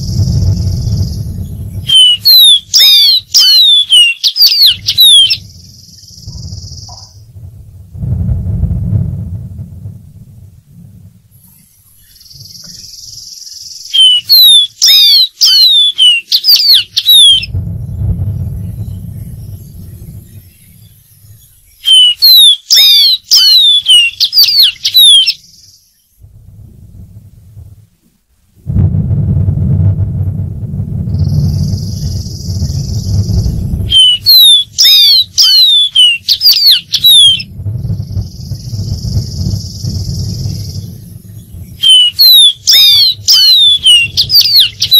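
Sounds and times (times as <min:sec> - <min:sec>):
steady high hiss: 0:00.0 - 0:02.0, 0:04.8 - 0:14.0, 0:16.8 - 0:21.9
low rumble: 0:00.0 - 0:03.4, 0:04.7 - 0:14.3, 0:17.0 - 0:22.0, 0:25.4 - 0:35.5, 0:36.3 - 0:44.9
bird whistled notes: 0:00.0 - 0:07.2, 0:11.4 - 0:17.5, 0:18.3 - 0:25.9, 0:31.2 - 0:44.9
bird high buzz: 0:00.0 - 0:08.2, 0:08.8 - 0:27.9, 0:29.3 - 0:44.9.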